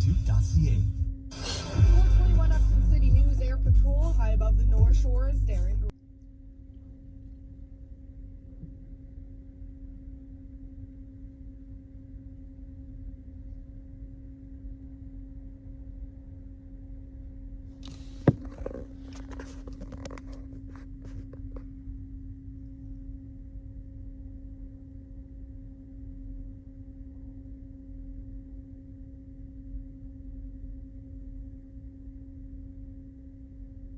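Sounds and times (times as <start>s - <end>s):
rustling and crackling: 17.8s - 21.6s
sharp knock: 17.9s - 18.8s.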